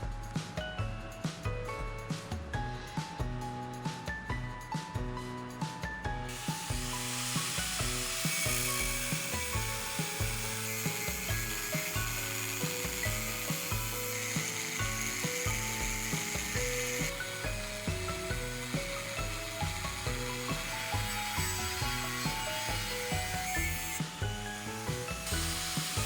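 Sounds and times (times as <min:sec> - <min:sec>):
background music with steady beat: 0:00.0 - 0:26.0
tool rasping on metal: 0:06.3 - 0:26.0.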